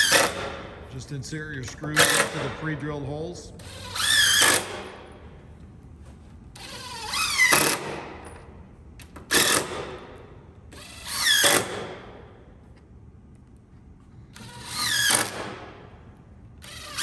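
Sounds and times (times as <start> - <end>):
power drill driving screws into wood: 4.0 - 4.8, 6.6 - 8.0, 10.8 - 11.8, 14.4 - 15.6.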